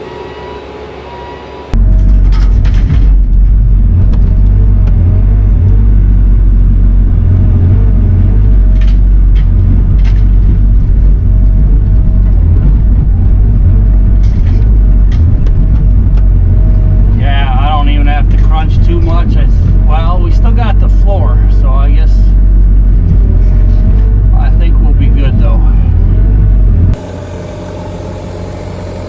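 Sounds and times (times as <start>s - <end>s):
diesel engine running loud: 0.0s - 29.0s.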